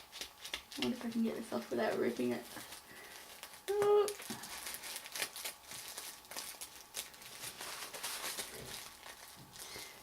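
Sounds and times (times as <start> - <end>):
tape peeling ticks: 0.0 - 1.2
wrapping paper rustling: 0.0 - 10.0.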